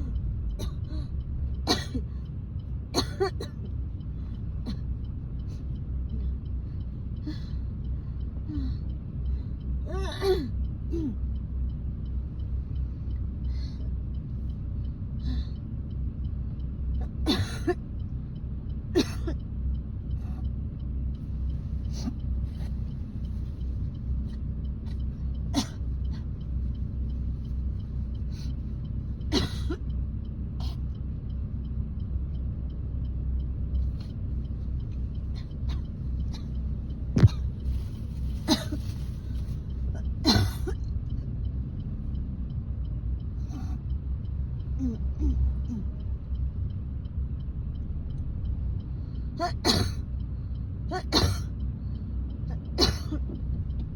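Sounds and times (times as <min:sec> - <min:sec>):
car cabin rumble: 0:00.0 - 0:53.9
woman coughing: 0:00.6 - 0:01.0, 0:01.7 - 0:02.1, 0:03.0 - 0:03.6, 0:17.2 - 0:17.8, 0:19.0 - 0:19.4, 0:25.5 - 0:26.2, 0:29.3 - 0:29.8, 0:37.2 - 0:37.5, 0:38.4 - 0:38.9, 0:39.9 - 0:40.8, 0:49.4 - 0:50.0, 0:50.9 - 0:51.5, 0:52.5 - 0:53.4
woman clearing her throat: 0:19.0 - 0:19.3, 0:40.2 - 0:40.8, 0:49.4 - 0:50.0, 0:50.9 - 0:51.5, 0:52.8 - 0:53.4.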